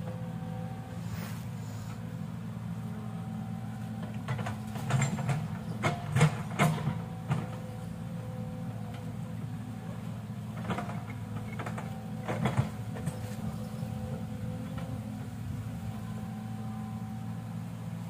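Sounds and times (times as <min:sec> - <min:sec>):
excavator diesel engine running: 0:00.0 - 0:18.0
faint steady whine: 0:06.9 - 0:18.0.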